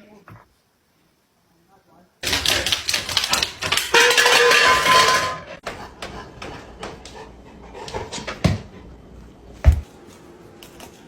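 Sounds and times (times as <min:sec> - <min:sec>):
dog panting: 0:05.7 - 0:08.9
dull thumps: 0:09.6 - 0:09.9.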